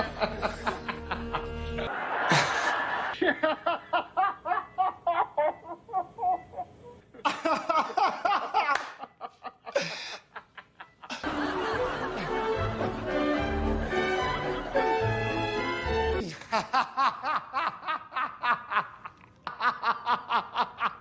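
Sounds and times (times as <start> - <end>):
music: 0.0 - 1.9, 11.2 - 16.2
person laughing in bursts: 0.0 - 14.7, 16.2 - 21.0.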